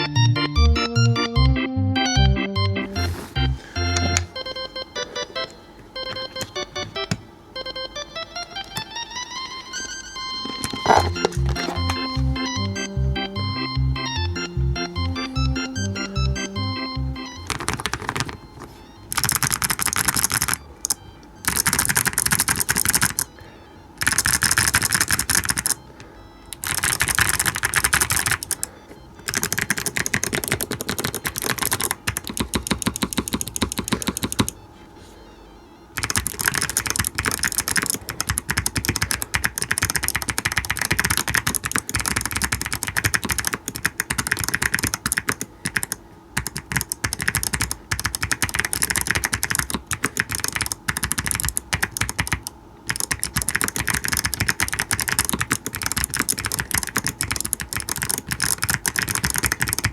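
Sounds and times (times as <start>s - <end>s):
mechanical keyboard typing: 9.8s - 23.4s, 24.0s - 25.8s, 26.5s - 34.6s, 36.0s - 59.9s.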